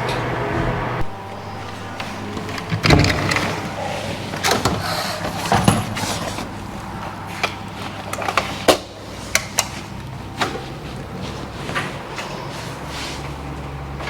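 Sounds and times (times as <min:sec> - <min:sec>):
steady low hum: 0:00.7 - 0:07.8
door clicks and knocks: 0:01.1 - 0:03.8.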